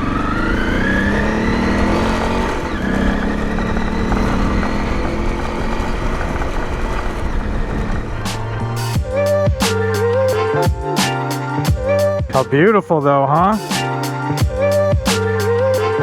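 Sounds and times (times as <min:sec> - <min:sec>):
motorcycle engine accelerating: 0:00.0 - 0:12.7
wind noise: 0:03.8 - 0:09.1.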